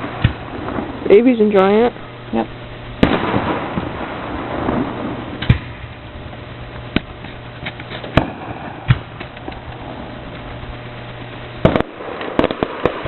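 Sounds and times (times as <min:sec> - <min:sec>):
faint crackle: 0:00.0 - 0:13.0
rolling rumble: 0:00.0 - 0:13.0
fireworks shells bursting: 0:03.0 - 0:13.0.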